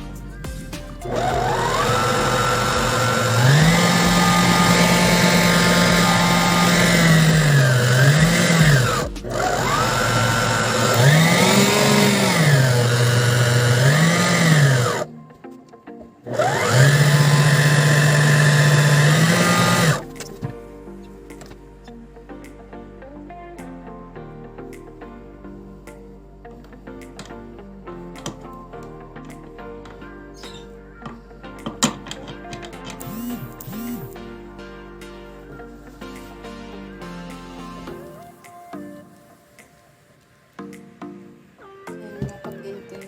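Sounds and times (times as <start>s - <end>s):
stand mixer motor whining: 1.1s - 15.0s, 16.3s - 20.0s.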